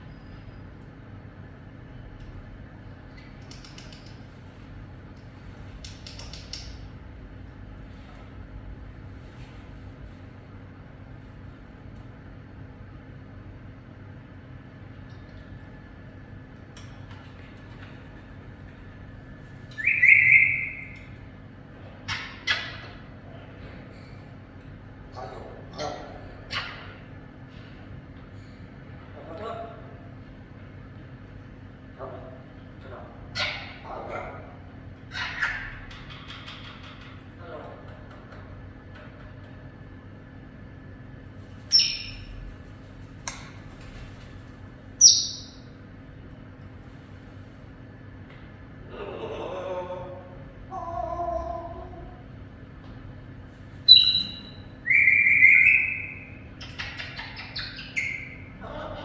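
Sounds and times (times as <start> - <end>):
parrot whistling: 19.7 - 21.1, 41.7 - 42.3, 53.9 - 58.5
parrot squawking: 19.7 - 21.2, 22.1 - 23.1, 25.1 - 27.1, 33.3 - 34.4, 35.1 - 36.7, 41.7 - 42.3, 45.0 - 45.6, 53.9 - 59.0.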